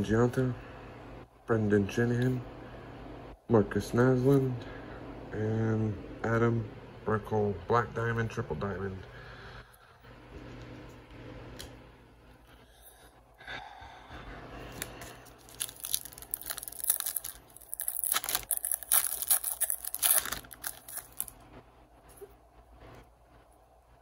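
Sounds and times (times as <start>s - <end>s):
plastic wrapper tearing and crinkling: 14.7s - 21.4s.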